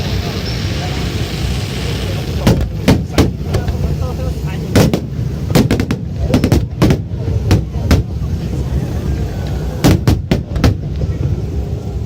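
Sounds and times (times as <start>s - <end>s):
fireworks bangs: 0.0s - 8.6s, 9.4s - 11.6s
steady low rumble: 0.0s - 12.0s.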